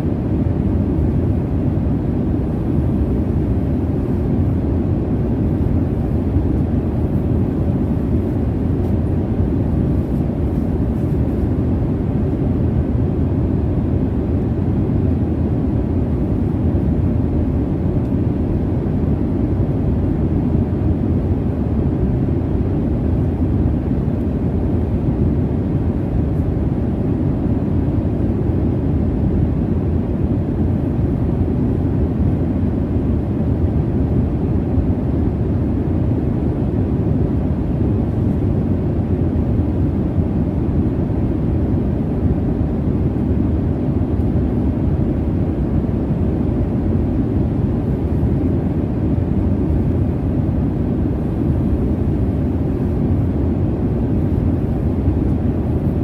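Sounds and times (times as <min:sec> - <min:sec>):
jet engine rumble in airliner cabin: 0:00.0 - 0:56.0.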